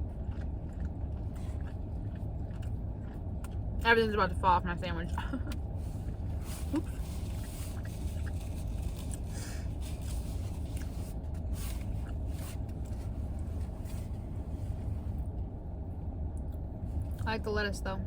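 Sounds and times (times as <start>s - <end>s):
person eating sandwich: 0.0s - 3.7s, 5.8s - 15.4s
idling car hum: 0.0s - 18.0s.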